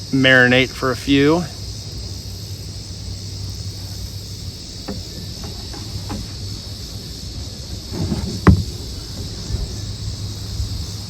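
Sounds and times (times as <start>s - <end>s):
insect chorus: 0.0s - 11.0s
wind buffeting microphone: 0.8s - 11.0s
light clicks and knocks: 4.6s - 6.9s, 7.8s - 10.5s.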